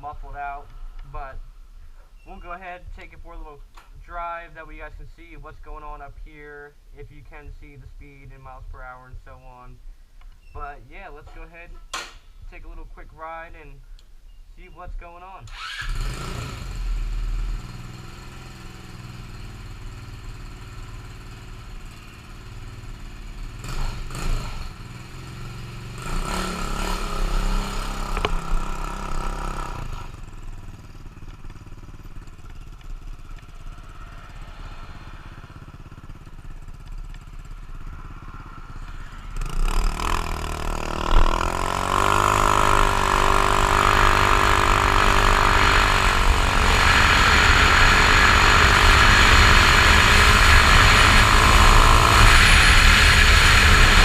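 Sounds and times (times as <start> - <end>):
scooter engine revving: 15.5 - 54.0.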